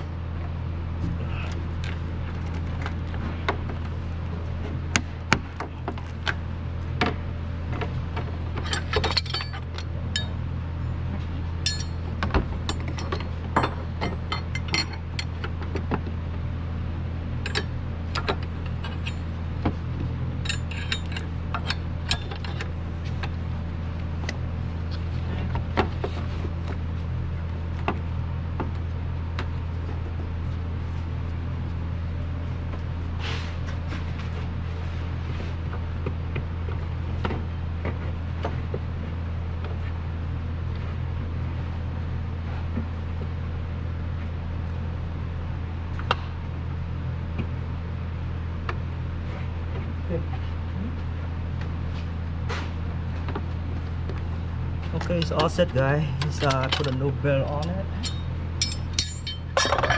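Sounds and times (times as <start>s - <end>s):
steady low hum: 0.0s - 59.9s
hand tools clinking on metal: 8.6s - 10.4s, 11.6s - 12.0s, 12.7s - 15.3s, 20.4s - 22.6s, 56.2s - 59.9s.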